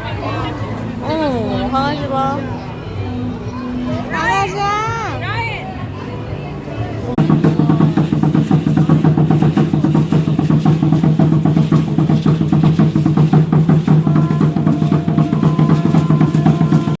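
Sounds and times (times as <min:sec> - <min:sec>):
music with fast drum beat: 0:07.2 - 0:17.0.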